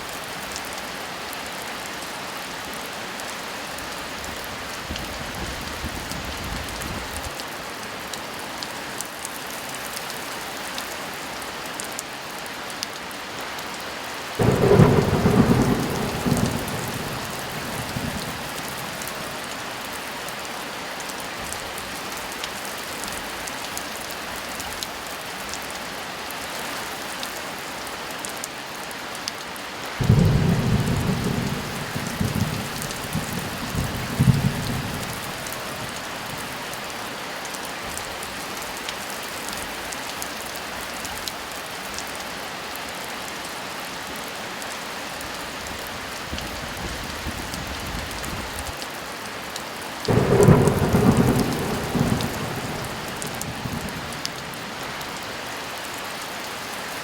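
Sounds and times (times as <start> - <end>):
heavy rain falling: 0.0 - 57.0
thunder rumbling: 14.4 - 19.8, 30.0 - 36.5, 50.1 - 55.3.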